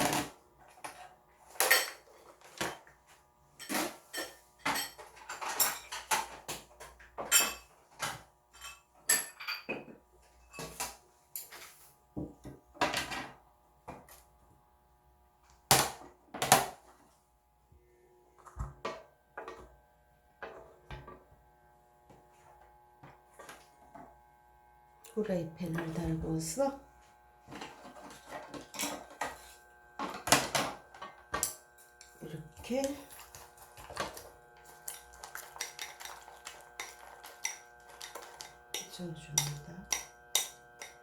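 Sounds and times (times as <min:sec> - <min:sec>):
utensil scraping a bowl: 0:31.4 - 0:41.0.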